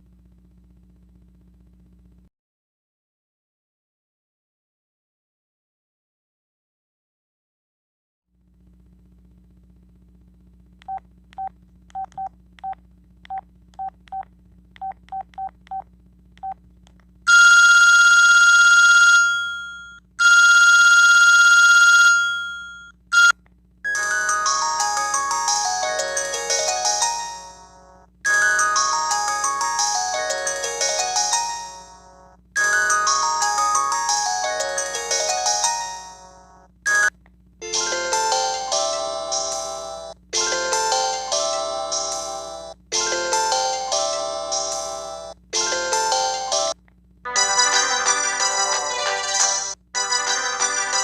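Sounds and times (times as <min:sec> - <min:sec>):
short phone beeps: 0:17.3 - 0:23.4
buzzing ring tones: 0:17.3 - 0:37.1
ringtone melody: 0:23.9 - 0:51.0.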